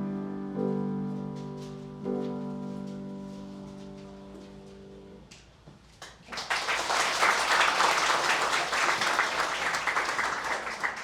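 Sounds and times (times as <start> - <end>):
audience applauding: 6.2 - 11.0.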